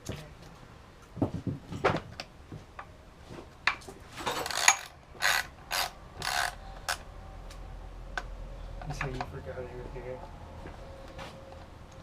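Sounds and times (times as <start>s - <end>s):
ratchet wrench clicking: 4.4s - 7.0s.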